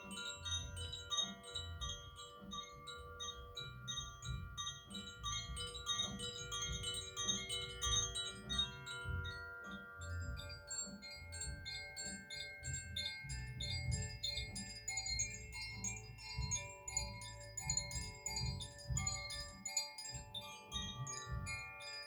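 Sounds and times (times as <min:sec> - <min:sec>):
wind chimes tinkling: 0:00.0 - 0:22.0.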